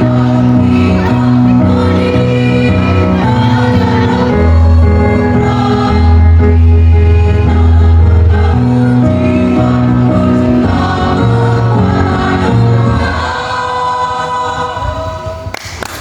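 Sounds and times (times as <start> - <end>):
musical accompaniment: 0.0 - 15.5
choir singing held chords: 0.0 - 15.6.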